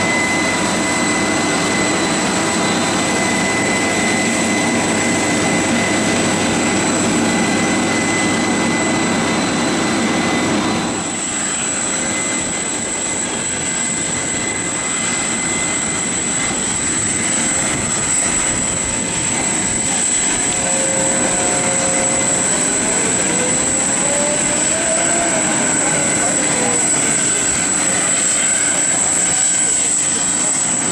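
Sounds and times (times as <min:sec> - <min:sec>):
jet engines whining: 0:00.0 - 0:30.9.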